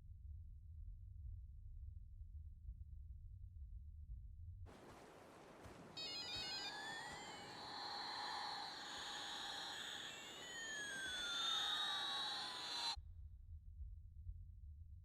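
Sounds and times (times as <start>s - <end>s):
steady hiss: 4.7s - 13.0s
stepped beeps: 4.8s - 13.0s
sweeping electronic tones: 5.6s - 13.0s.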